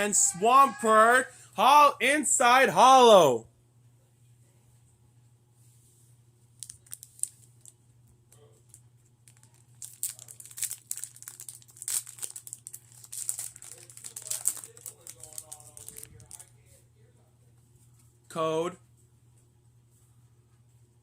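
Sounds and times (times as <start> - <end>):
foil wrapper crinkling and tearing: 6.6 - 7.8, 8.6 - 16.5.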